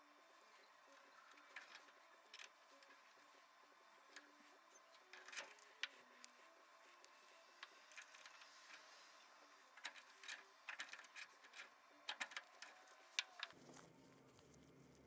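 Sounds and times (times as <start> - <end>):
low hum: 0.0 - 15.0
faint small clicks and taps: 9.8 - 15.0.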